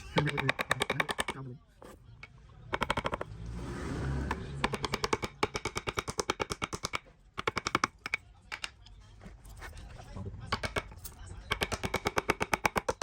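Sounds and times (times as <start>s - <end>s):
tool knocking on wood: 0.2s - 1.4s, 2.7s - 3.3s, 4.3s - 8.7s, 11.5s - 13.0s.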